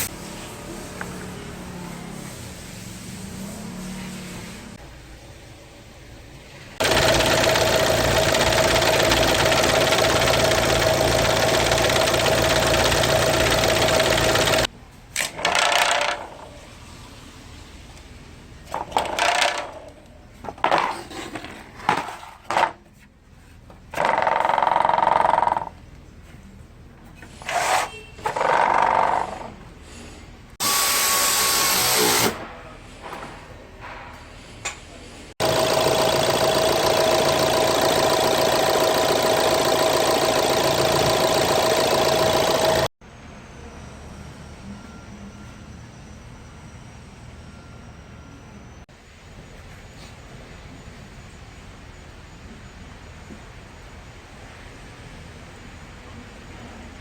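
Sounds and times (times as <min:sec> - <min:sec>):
workshop tool sounds: 0:27.1 - 0:42.9
loud cooling fan whine: 0:42.2 - 0:57.0.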